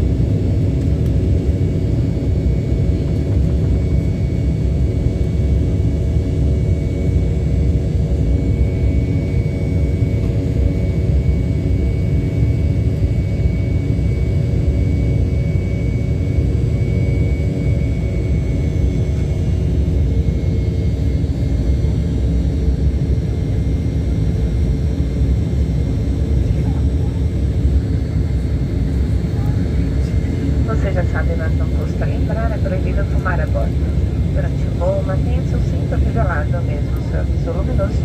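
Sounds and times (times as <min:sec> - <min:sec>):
jet engines rumbling in cabin: 0:00.0 - 0:38.0.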